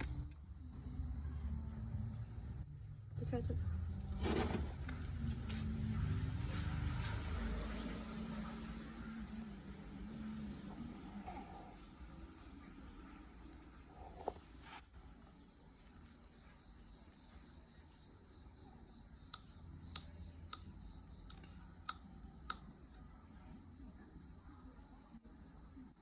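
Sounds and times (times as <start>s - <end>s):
crickets chirping: 0.0s - 26.0s
sharp clicks: 19.3s - 22.7s.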